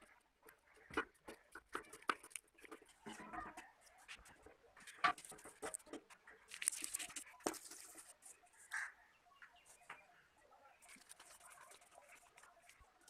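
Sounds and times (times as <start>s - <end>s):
small objects clicking and tapping: 0.4s - 8.1s.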